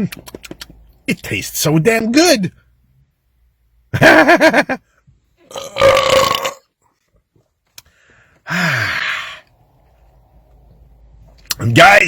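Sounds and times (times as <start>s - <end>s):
man belching: 5.5s - 6.7s.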